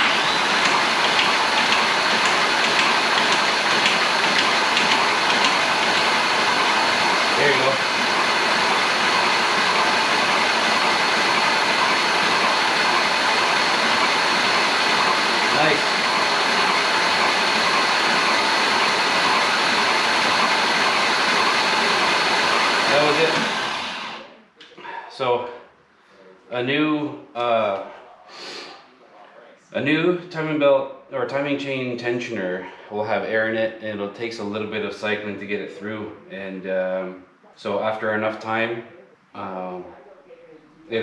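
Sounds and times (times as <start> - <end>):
engine cranking on starter: 0.0 - 24.3
thin high whine: 0.0 - 25.3.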